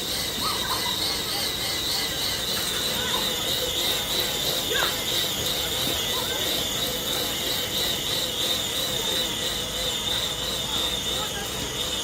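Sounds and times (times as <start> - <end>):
bicycle tyre whining on rollers: 0.0 - 12.0.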